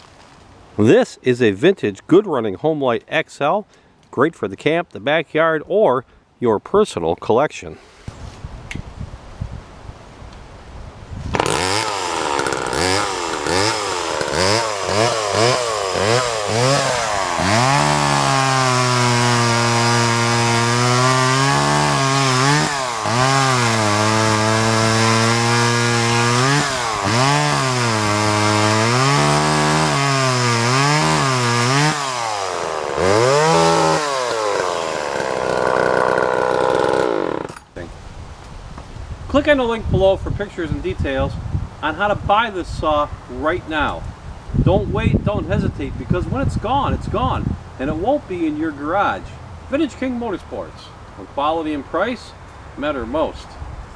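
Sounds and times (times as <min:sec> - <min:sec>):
chainsaw engine revving: 0:11.3 - 0:37.7.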